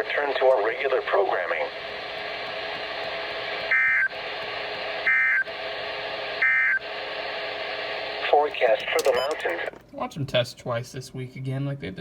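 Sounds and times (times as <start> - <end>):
radio static hiss: 0.0 - 9.8
buzzy two-tone digital bursts: 3.7 - 4.1, 5.0 - 5.5, 6.4 - 6.8.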